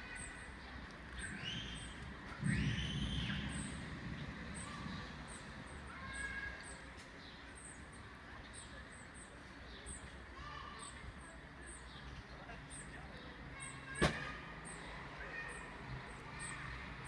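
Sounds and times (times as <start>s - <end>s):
arched higher calls: 1.3s - 3.9s
thunder rumble: 1.3s - 6.0s.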